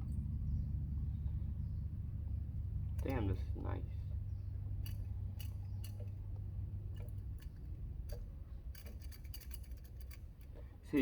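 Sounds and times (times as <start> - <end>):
low hum: 0.0 - 9.6
small metal parts clicking: 4.8 - 6.3, 6.9 - 10.6.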